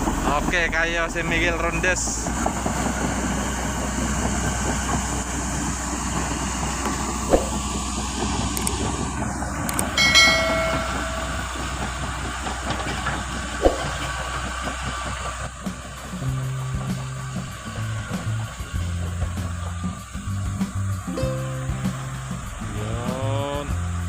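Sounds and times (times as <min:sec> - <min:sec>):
bulldozer diesel engine: 0:00.0 - 0:24.0
steel tracks clanking: 0:00.0 - 0:24.0
sharp knocks: 0:10.0 - 0:11.8.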